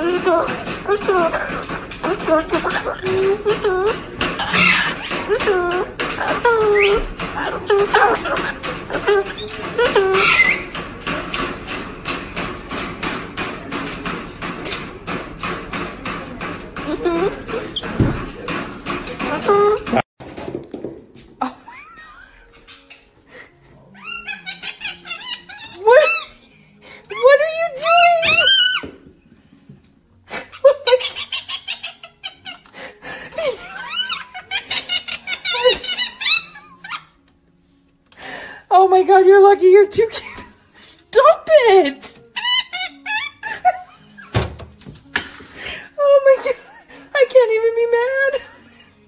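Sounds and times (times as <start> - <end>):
parrot squawk: 0.0 - 10.8, 23.9 - 26.4, 27.1 - 29.0, 30.5 - 32.7, 33.6 - 37.1, 41.8 - 43.8.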